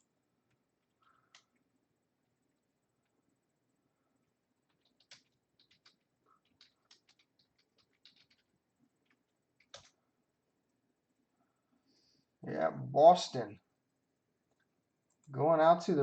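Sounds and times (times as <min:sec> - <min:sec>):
typing on computer keyboard: 0:04.6 - 0:10.0.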